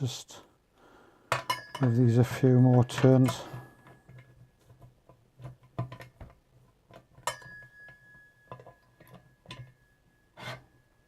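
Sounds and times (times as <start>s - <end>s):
metallic clicks and knocks: 1.3s - 9.8s
thin metallic ringing tone: 1.4s - 4.4s, 7.2s - 11.0s.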